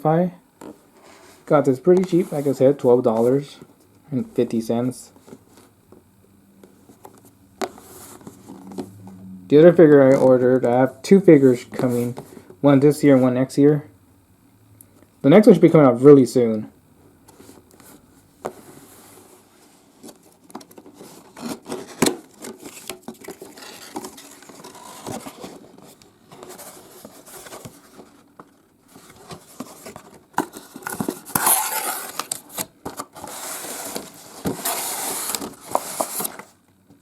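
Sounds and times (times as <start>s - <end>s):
rustling and crinkling: 5.1s - 9.1s, 17.2s - 37.0s
cardboard box being handled: 20.9s - 28.2s.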